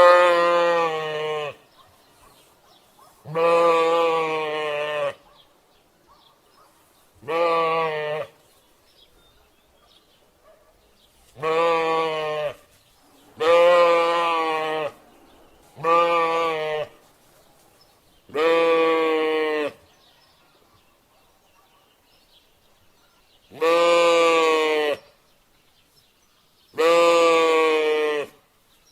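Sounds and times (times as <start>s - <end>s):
sheep bleating: 0.0s - 1.6s, 3.3s - 5.2s, 7.2s - 8.4s, 11.4s - 12.6s, 13.4s - 15.0s, 15.8s - 17.0s, 18.3s - 19.8s, 23.6s - 25.0s, 26.8s - 28.4s.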